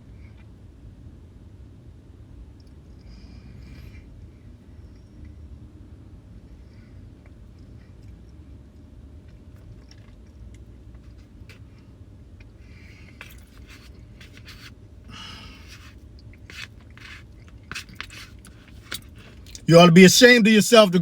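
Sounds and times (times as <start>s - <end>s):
low steady hum: 0.0s - 21.0s
chewing: 9.3s - 11.3s.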